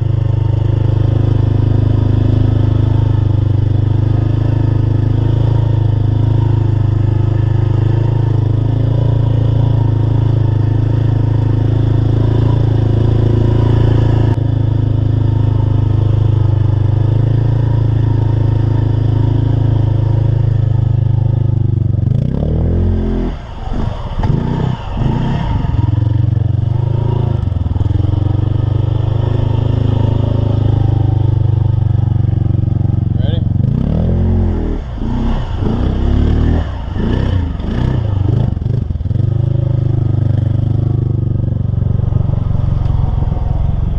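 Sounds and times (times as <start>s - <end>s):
truck engine running and revving: 0.0s - 43.9s.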